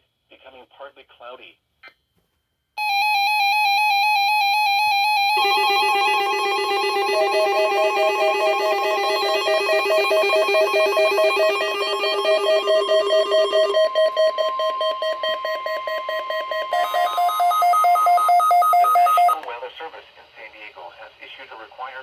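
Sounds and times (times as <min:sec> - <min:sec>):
steady higher tone: 0:05.1 - 0:19.5
rapidly pulsing musical tone: 0:05.3 - 0:19.5.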